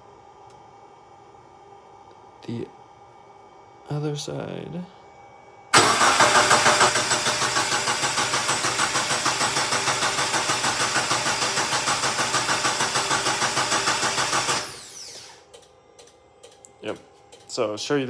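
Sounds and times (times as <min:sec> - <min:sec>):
starter cranking engine: 0:05.8 - 0:15.4.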